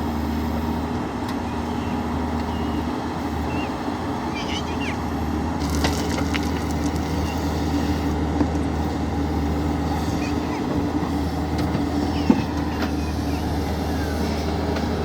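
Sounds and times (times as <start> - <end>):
backhoe diesel engine running: 0.0 - 15.0.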